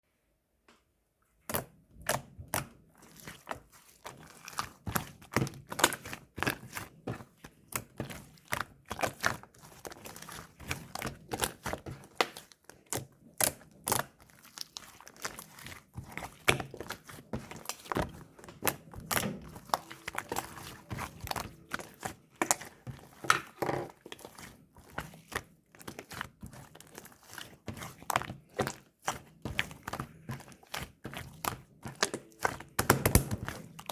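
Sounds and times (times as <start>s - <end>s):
slime squishing: 1.3s - 33.9s
slime clicking and popping: 31.4s - 33.9s.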